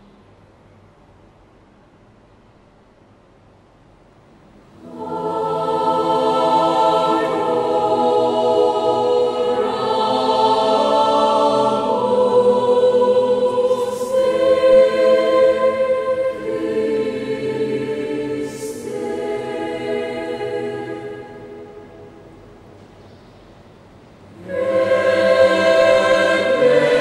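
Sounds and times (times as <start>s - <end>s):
choir singing held chords: 4.7s - 22.8s, 24.2s - 27.0s.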